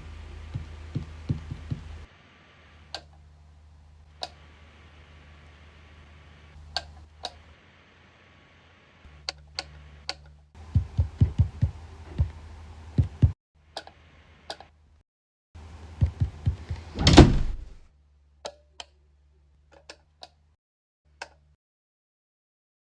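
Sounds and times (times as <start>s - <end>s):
low thumps: 0.0s - 2.1s, 10.6s - 13.4s, 16.0s - 17.8s.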